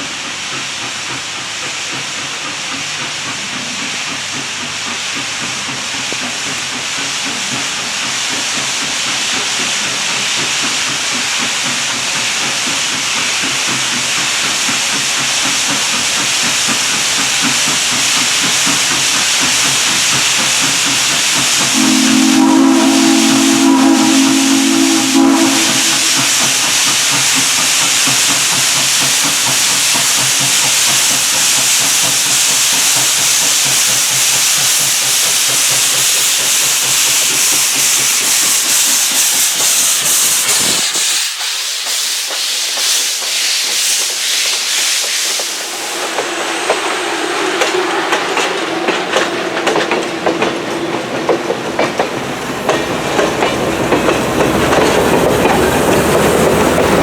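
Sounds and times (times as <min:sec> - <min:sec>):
steam locomotive hissing: 0:00.0 - 0:57.0
steam whistle blast: 0:21.6 - 0:26.5.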